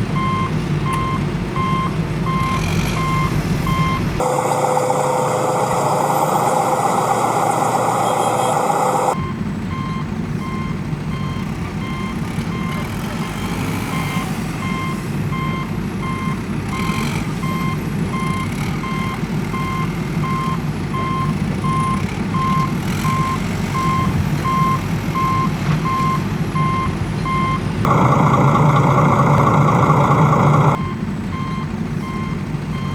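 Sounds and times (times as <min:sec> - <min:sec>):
diesel engine rumble: 0:00.0 - 0:32.9
reversing alarm beeping: 0:00.2 - 0:32.9
high-pitched hum: 0:02.5 - 0:09.2.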